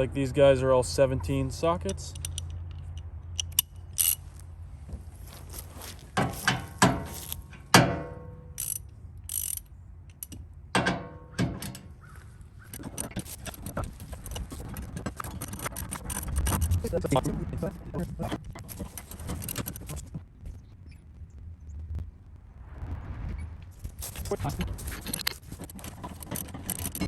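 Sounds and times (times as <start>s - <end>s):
socket ratchet clicking: 2.1s - 4.2s, 8.6s - 10.4s.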